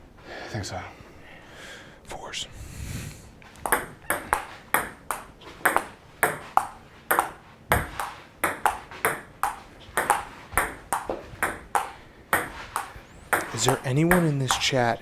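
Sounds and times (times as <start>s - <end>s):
ping-pong ball clicking: 3.5s - 14.8s.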